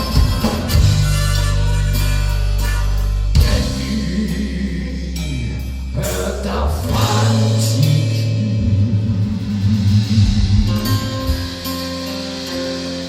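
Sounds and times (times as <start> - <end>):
person singing: 0.0 - 11.4
electric guitar chords: 0.0 - 13.0
rock band playing live: 0.0 - 13.0.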